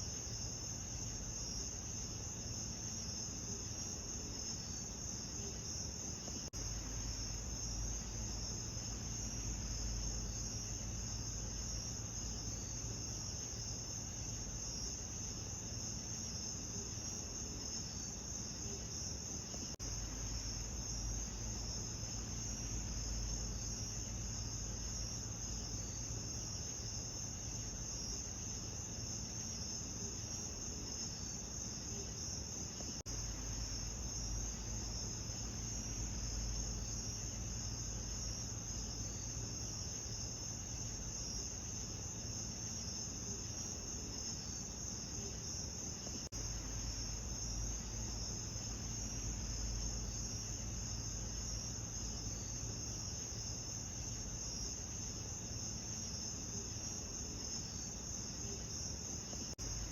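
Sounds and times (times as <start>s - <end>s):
crickets chirping: 0.0s - 59.9s
low steady rumble: 6.6s - 15.7s, 19.6s - 28.9s, 33.0s - 42.2s, 46.3s - 54.4s, 59.6s - 59.9s.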